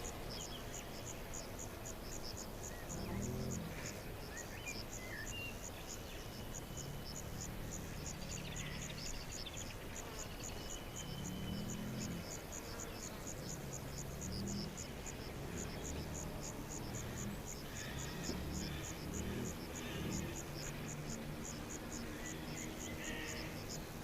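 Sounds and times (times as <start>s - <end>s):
crickets chirping: 0.0s - 24.0s.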